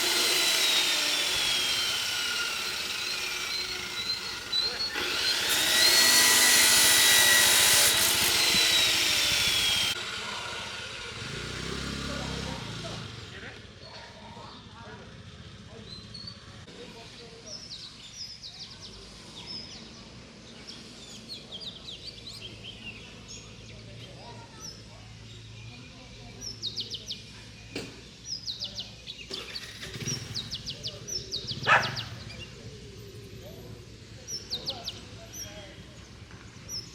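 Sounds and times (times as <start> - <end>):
power tool cutting whine: 0.0 - 12.4
songbird singing: 17.2 - 36.9.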